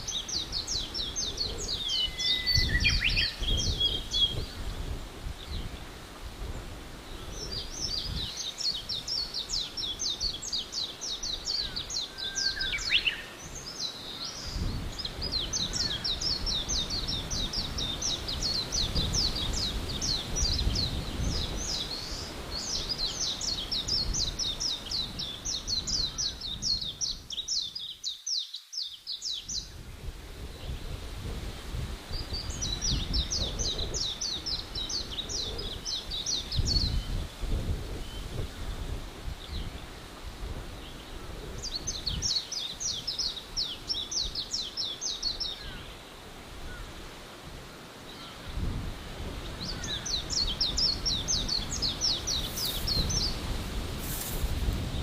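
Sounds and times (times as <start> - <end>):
birds chirping in a trill: 0.0 - 4.8, 49.4 - 53.5.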